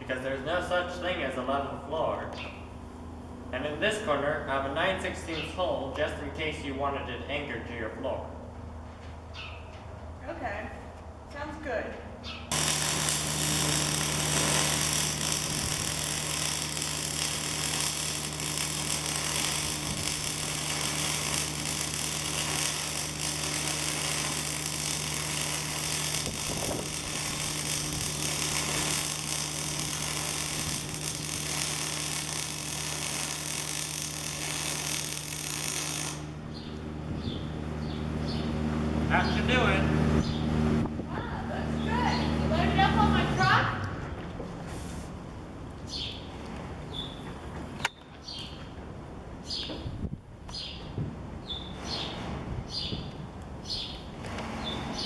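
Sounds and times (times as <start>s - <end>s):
welding arc crackling: 12.5s - 36.4s.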